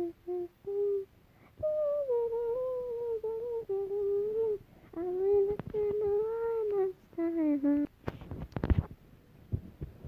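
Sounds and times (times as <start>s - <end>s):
person humming a tune: 0.0s - 7.9s.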